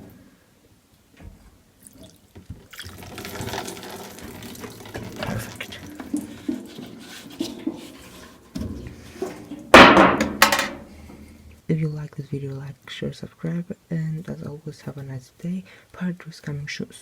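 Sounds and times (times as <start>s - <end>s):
small clicks and spatters: 1.8s - 8.4s.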